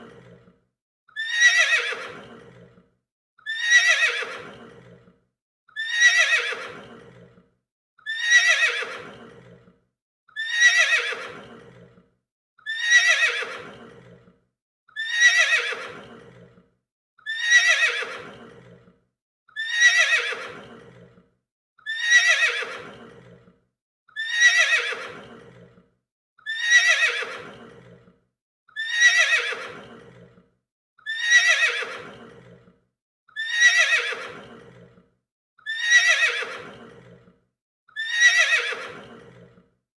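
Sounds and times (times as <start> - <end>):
horse whinnying: 1.2 - 2.8, 3.4 - 5.1, 5.8 - 7.4, 8.0 - 9.7, 10.4 - 12.0, 12.7 - 14.2, 15.0 - 16.6, 17.3 - 18.9, 19.6 - 21.2, 21.9 - 23.5, 24.2 - 25.8, 26.5 - 28.1, 28.8 - 30.4, 31.0 - 32.6, 33.4 - 34.9, 35.7 - 37.3, 38.0 - 39.6.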